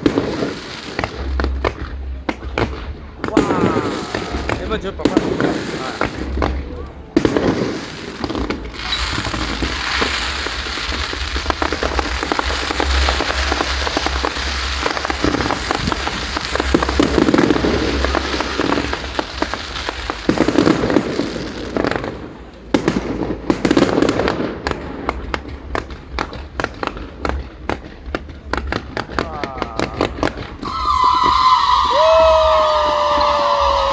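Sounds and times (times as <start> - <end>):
fireworks crackling and popping: 0.0 - 33.9.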